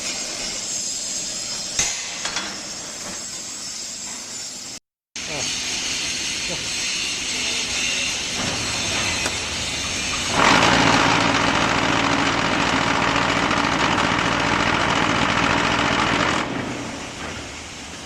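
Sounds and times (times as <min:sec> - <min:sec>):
machine vibrating with rattling buzz: 0:02.5 - 0:18.0
machine hum: 0:05.2 - 0:18.0.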